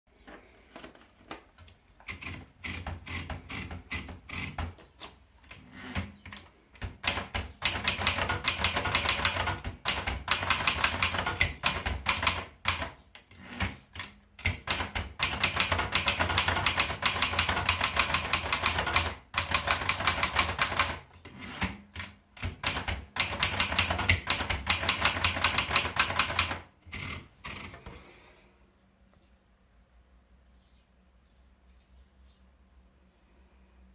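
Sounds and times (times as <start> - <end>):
manual typewriter typing: 2.0 - 4.8, 5.5 - 27.8.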